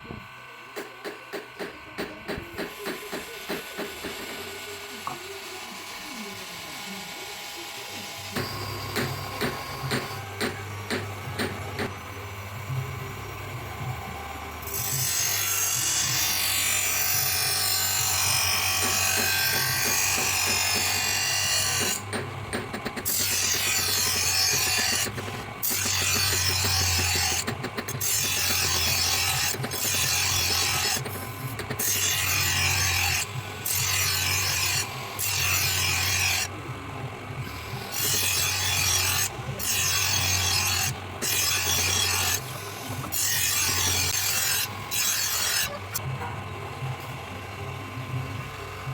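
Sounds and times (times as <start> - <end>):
steel being ground or filed: 14.6 - 22.1, 22.7 - 36.5, 37.4 - 45.8.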